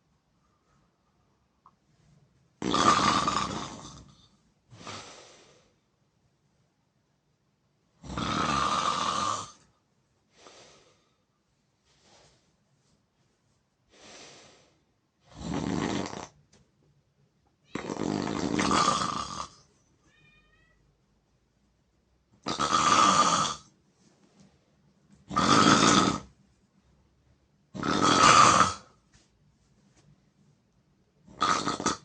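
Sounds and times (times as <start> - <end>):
person snoring loudly: 2.6 - 4.2, 8.0 - 9.6, 15.2 - 16.4, 17.8 - 19.6, 22.4 - 23.7, 25.3 - 26.3, 27.8 - 28.9, 31.3 - 32.0.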